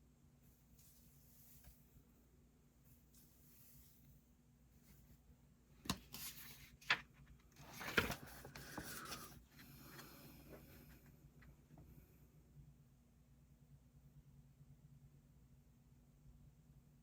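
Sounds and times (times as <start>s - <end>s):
paper page rustling: 5.9s - 10.1s.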